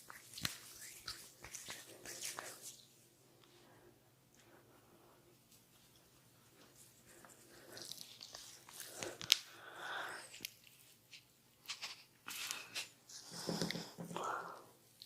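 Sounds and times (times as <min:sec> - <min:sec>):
hands rubbing oiled hair: 0:00.0 - 0:03.0.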